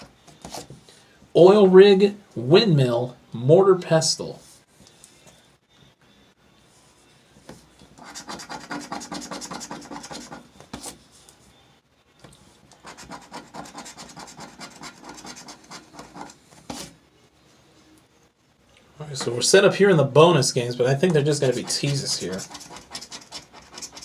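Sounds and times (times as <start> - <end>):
scratching lottery ticket coating: 21.4 - 24.0.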